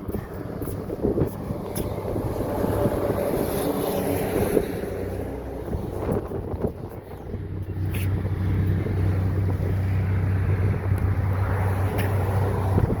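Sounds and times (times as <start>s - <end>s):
motor vehicle engine humming: 0.0s - 13.0s.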